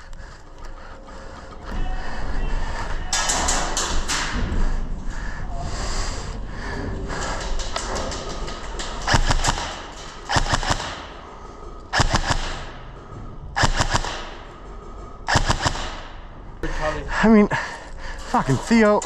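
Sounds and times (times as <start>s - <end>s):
airsoft guns firing bursts: 9.0s - 11.3s, 11.9s - 12.8s, 13.6s - 14.5s, 15.3s - 16.1s.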